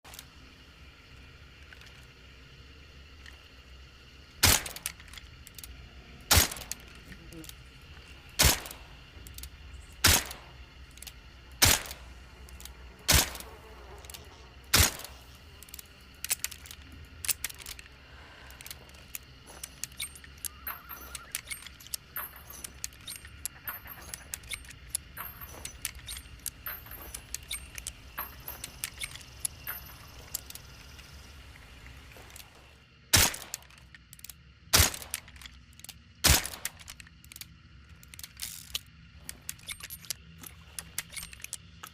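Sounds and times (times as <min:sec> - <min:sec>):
metallic clicks and rattles: 0:04.4 - 0:31.1, 0:33.2 - 0:41.9
suppressed revolver shots: 0:06.3 - 0:06.9, 0:08.4 - 0:08.8, 0:10.0 - 0:10.6, 0:11.6 - 0:12.0.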